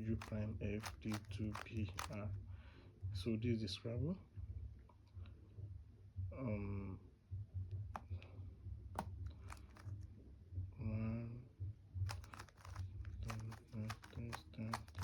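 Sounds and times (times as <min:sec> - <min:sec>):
plastic puzzle cube clicking: 0:00.0 - 0:02.3, 0:09.0 - 0:10.0, 0:12.1 - 0:15.0.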